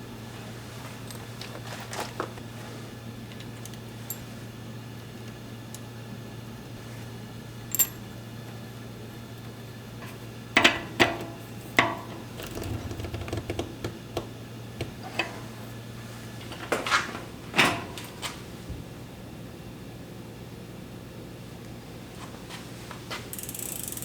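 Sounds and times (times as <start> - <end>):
metal bike parts clinking: 7.7 - 8.0.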